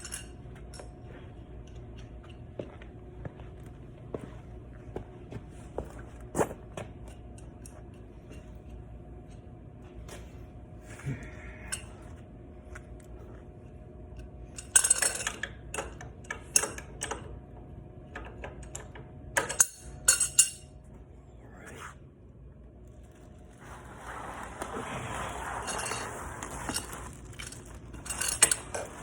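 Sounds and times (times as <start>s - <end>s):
metal tools clinking and clattering: 19.4s - 20.7s, 25.6s - 29.0s.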